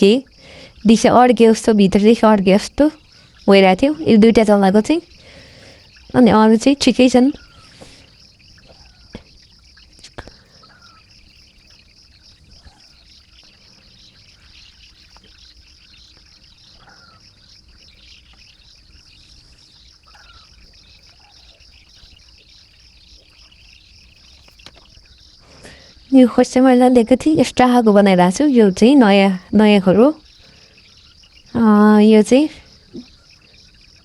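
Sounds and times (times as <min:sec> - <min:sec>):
crickets chirping: 0:00.0 - 0:34.0
faint short bird calls: 0:04.9 - 0:26.2.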